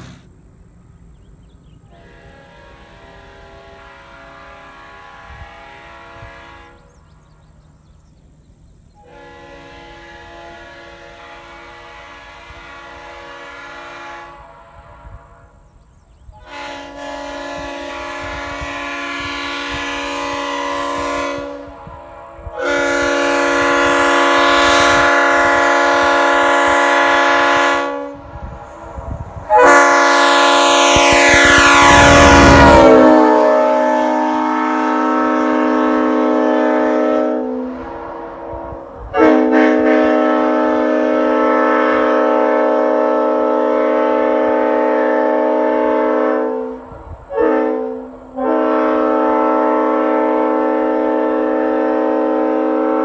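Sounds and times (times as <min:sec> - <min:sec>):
air horn chord blasts: 0:16.4 - 0:28.3, 0:29.5 - 0:38.6, 0:39.2 - 0:53.0.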